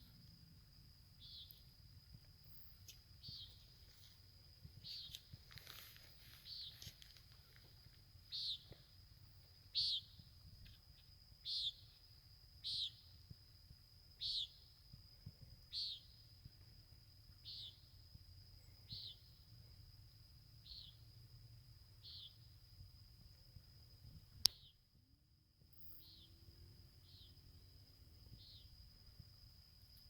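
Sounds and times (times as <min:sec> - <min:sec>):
night bird calling: 0:01.2 - 0:01.6, 0:03.2 - 0:03.7, 0:04.8 - 0:05.2, 0:06.4 - 0:06.9, 0:08.3 - 0:08.7, 0:09.7 - 0:10.2, 0:11.4 - 0:12.0, 0:12.6 - 0:13.2, 0:14.2 - 0:14.8, 0:15.7 - 0:16.2, 0:17.4 - 0:18.0, 0:20.6 - 0:21.1, 0:22.0 - 0:22.6.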